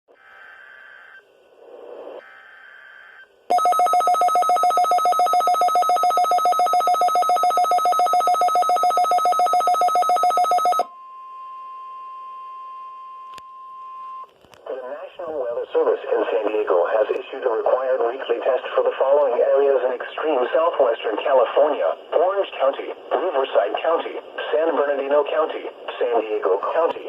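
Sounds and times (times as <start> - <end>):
steady alarm tone: 2.2 - 14.1.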